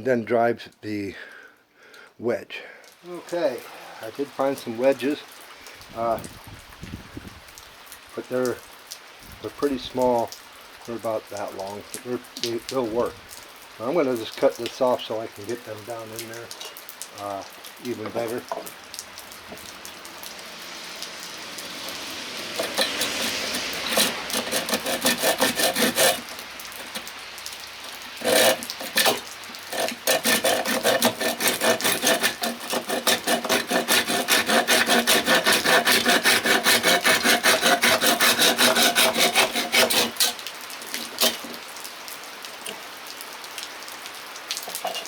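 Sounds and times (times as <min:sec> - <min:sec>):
saw cutting wood: 0:21.4 - 0:41.6.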